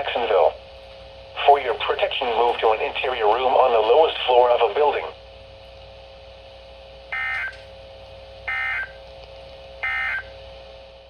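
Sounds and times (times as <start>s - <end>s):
faint steady hum: 0.0s - 11.0s
digital data tone screech: 9.8s - 10.3s.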